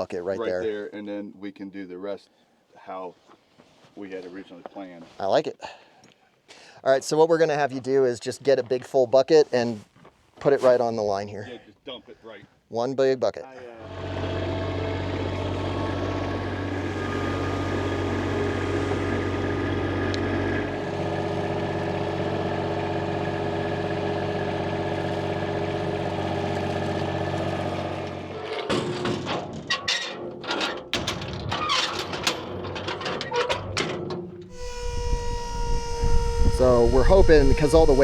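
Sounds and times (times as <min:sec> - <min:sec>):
skid steer engine running: 0:13.8 - 0:28.5, 0:34.5 - 0:38.0
knocks and clatter: 0:28.3 - 0:34.3.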